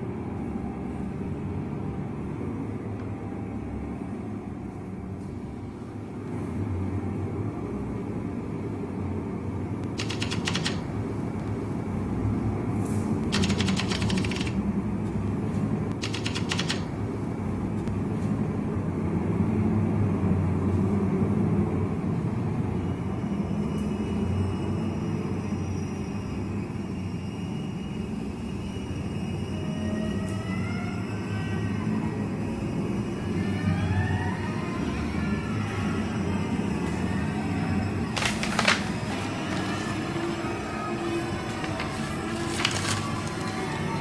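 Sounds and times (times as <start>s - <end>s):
typewriter keys clattering: 10.0s - 10.9s, 13.3s - 14.6s, 16.0s - 16.9s, 38.2s - 39.0s.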